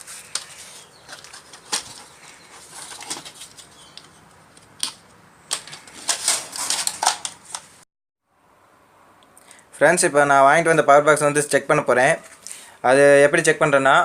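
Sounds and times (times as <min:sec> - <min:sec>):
plastic computer case parts clicking: 0:01.1 - 0:07.7.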